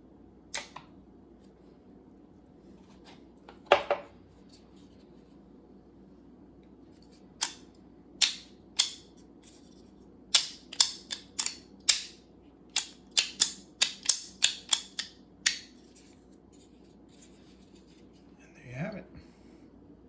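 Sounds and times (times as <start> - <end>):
plastic parts snapping together: 7.4 - 7.6, 10.3 - 15.6.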